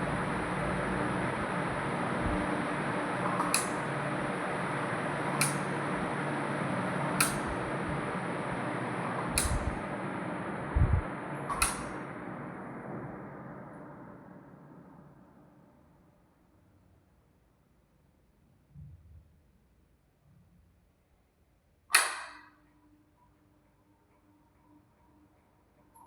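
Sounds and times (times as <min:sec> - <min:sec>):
ceiling fan whooshing: 0:00.0 - 0:16.1
sharp clicks: 0:05.4 - 0:05.7, 0:07.2 - 0:07.6, 0:09.3 - 0:09.8, 0:11.5 - 0:12.0, 0:21.9 - 0:22.5.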